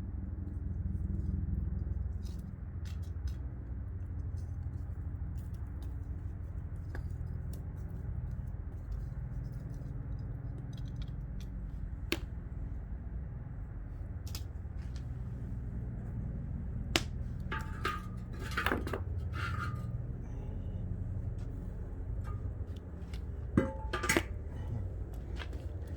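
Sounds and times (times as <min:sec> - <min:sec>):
wood fire crackling: 0:10.1 - 0:25.9
low rumble: 0:11.6 - 0:25.9
scraping clinking sounds: 0:17.3 - 0:25.9.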